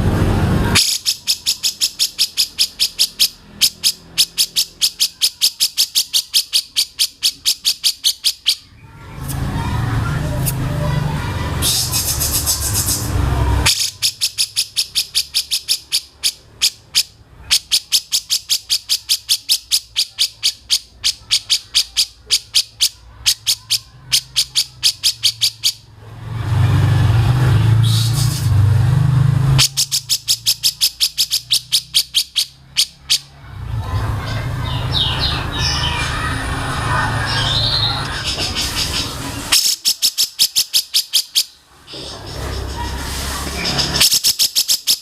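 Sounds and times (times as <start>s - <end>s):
songbird ticking calls: 0.8s - 8.7s, 13.7s - 25.9s, 29.6s - 33.3s, 38.0s - 41.6s, 43.8s - 45.0s.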